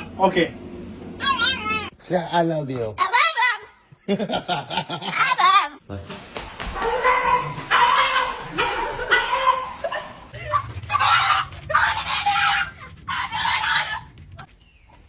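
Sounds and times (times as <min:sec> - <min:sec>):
cat meowing: 0:01.2 - 0:02.0.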